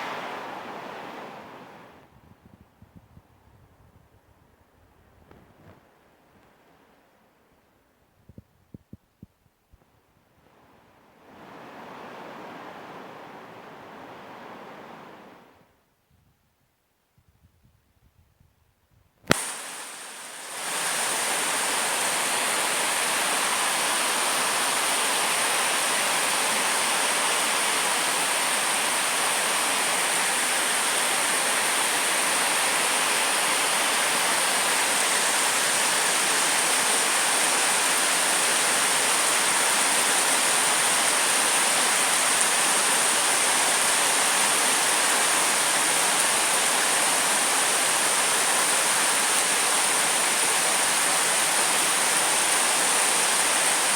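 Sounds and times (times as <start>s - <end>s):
heavy rain downpour: 0.0s - 2.1s, 10.5s - 15.5s, 19.3s - 53.9s
click: 19.2s - 19.5s.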